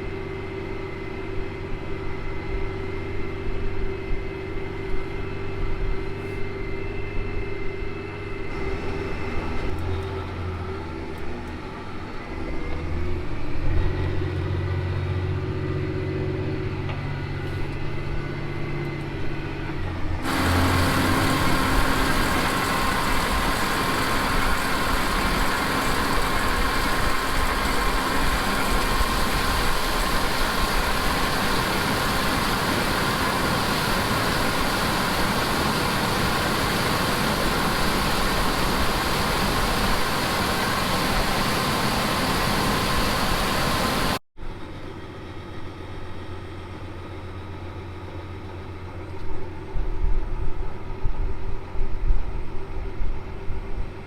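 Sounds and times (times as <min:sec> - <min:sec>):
low engine hum: 0:00.0 - 0:54.0
harvest machinery running: 0:19.5 - 0:44.2.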